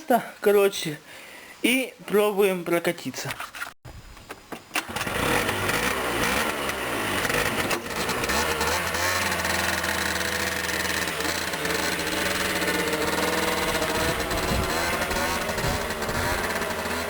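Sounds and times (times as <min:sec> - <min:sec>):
scooter engine running: 0:04.8 - 0:17.0.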